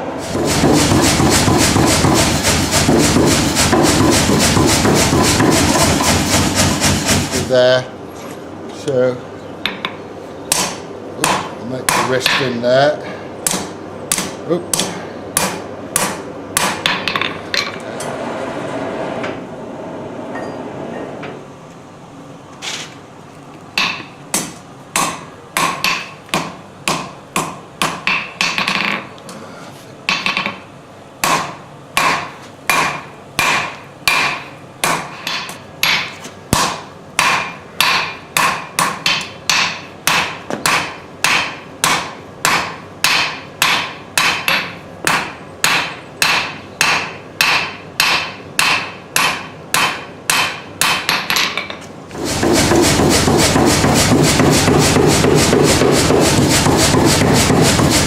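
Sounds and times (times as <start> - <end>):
loud steady noise: 0.0 - 7.9, 35.9 - 58.0.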